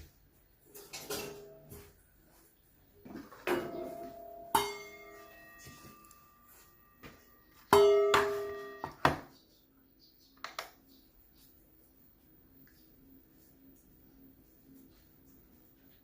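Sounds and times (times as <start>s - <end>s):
metal kitchenware clanking: 0.7s - 1.9s, 3.1s - 9.3s.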